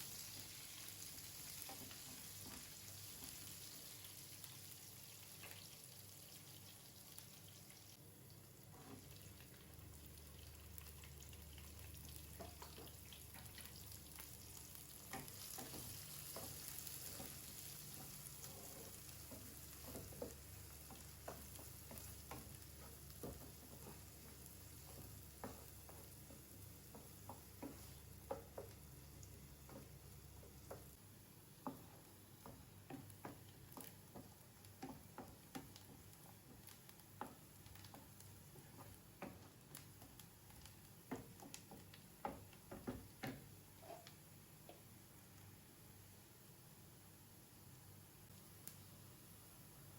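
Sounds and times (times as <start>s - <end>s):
food sizzling in a frying pan: 0.0s - 49.9s.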